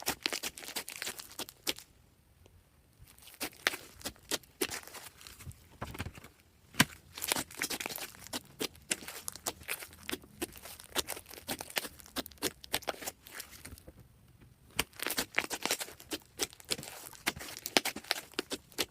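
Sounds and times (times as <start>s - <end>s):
slime crackling and popping: 0.0s - 1.9s, 7.1s - 13.8s, 14.7s - 18.9s.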